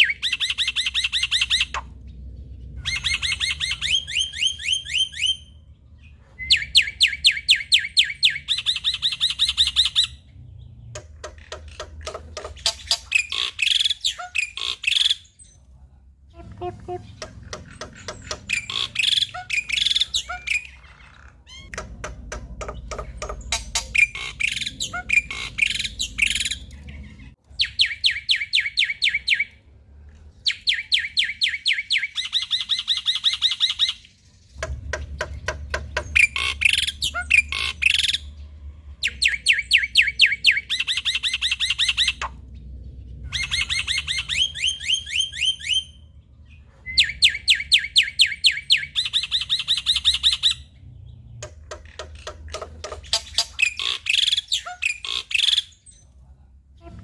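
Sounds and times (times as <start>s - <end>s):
faint low hum: 1.4s - 7.0s, 55.7s - 57.0s.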